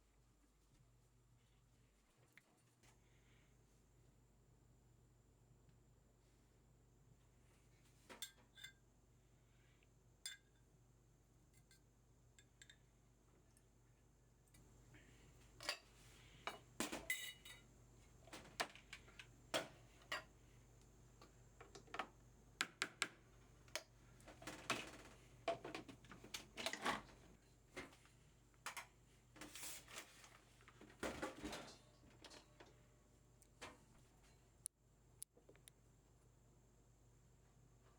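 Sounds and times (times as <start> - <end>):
utensils clinking against dishes: 16.5 - 17.7.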